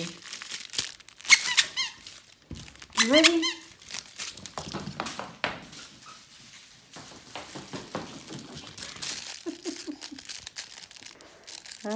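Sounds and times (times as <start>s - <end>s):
crinkle toy rustling: 0.0s - 11.9s
toy squeaks: 1.3s - 2.1s, 3.0s - 3.7s.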